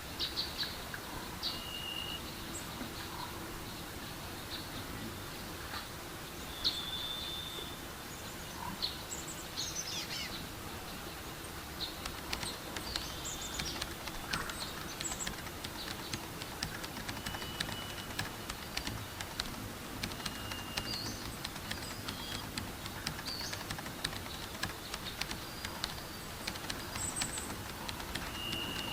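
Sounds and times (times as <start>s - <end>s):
birds chirping: 11.8s - 28.9s
quick high ticks: 11.9s - 28.9s
held whistles: 26.7s - 28.9s.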